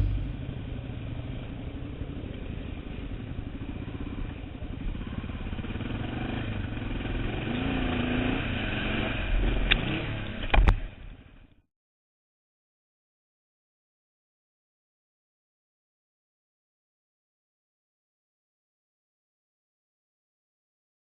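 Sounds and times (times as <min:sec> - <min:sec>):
motorcycle engine revving: 0:00.0 - 0:11.2.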